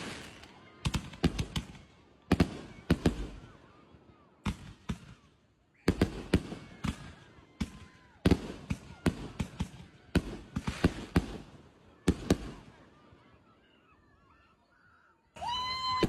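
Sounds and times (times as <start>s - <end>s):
fireworks bangs: 0.0s - 3.6s, 4.4s - 12.7s.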